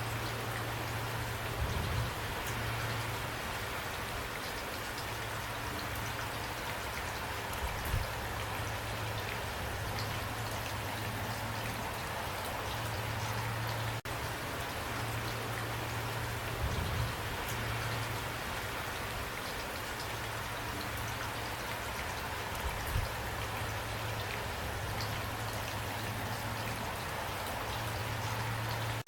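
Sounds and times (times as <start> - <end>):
steady rainfall: 0.0 - 29.0.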